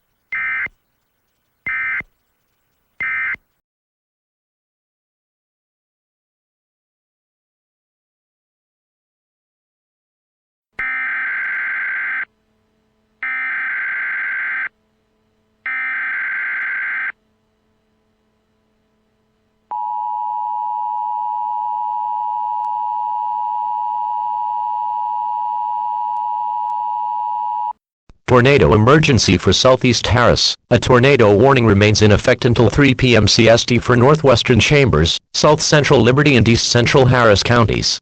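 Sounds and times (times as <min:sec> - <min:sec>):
buzzing digital header bursts: 0:00.3 - 0:02.4, 0:03.0 - 0:03.4, 0:10.8 - 0:12.3, 0:13.2 - 0:14.8, 0:15.6 - 0:17.2
two-tone attention signal: 0:03.0 - 0:03.4.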